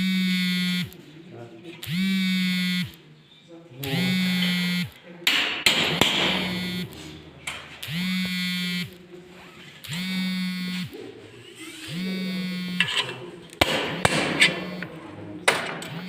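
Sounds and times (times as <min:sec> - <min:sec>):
electrical buzzing: 0:00.0 - 0:01.0, 0:01.8 - 0:03.0, 0:03.8 - 0:05.0, 0:05.8 - 0:09.1, 0:09.7 - 0:13.2, 0:13.8 - 0:15.0, 0:15.6 - 0:16.0.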